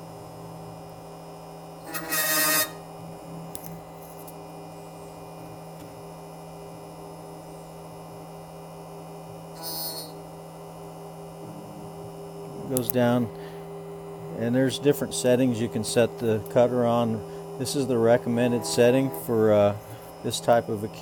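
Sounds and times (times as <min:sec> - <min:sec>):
cutter grinding metal: 0:01.8 - 0:02.8, 0:14.8 - 0:21.0
key machine humming: 0:10.1 - 0:21.0.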